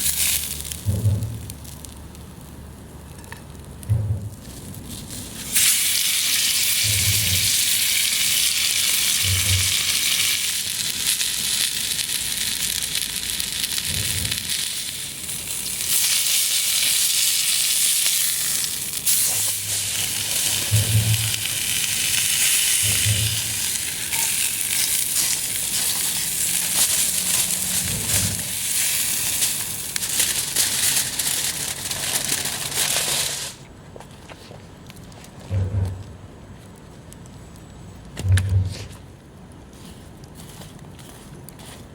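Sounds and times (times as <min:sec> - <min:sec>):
beef sizzling in a skillet: 0:00.0 - 0:00.8, 0:05.2 - 0:32.5
dull low knocks: 0:00.8 - 0:01.7, 0:03.8 - 0:04.6, 0:20.6 - 0:21.4, 0:35.5 - 0:36.4, 0:38.2 - 0:38.9.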